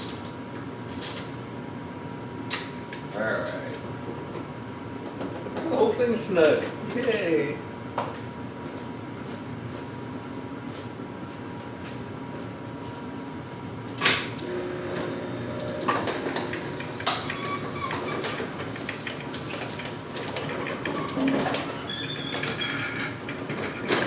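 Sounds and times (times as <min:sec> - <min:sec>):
garage door metal clank: 0:14.2 - 0:24.0
garage door rollers rumbling: 0:14.4 - 0:24.0.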